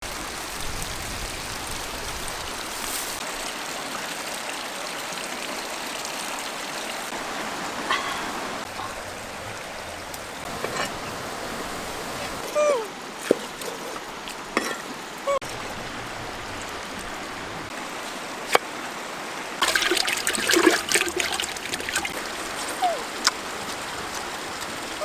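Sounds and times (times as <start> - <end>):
water flowing in a stream: 0.0 - 25.0.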